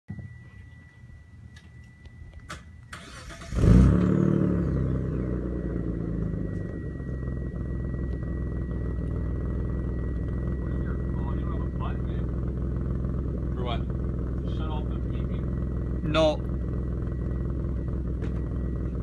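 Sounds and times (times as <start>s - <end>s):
car engine cranking and idling: 1.5s - 19.0s
thin high tone: 4.6s - 12.4s.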